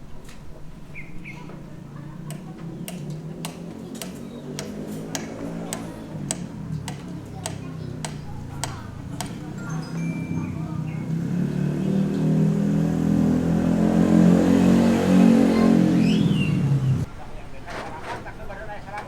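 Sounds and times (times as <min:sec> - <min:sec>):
sharp taps: 0:02.3 - 0:09.5.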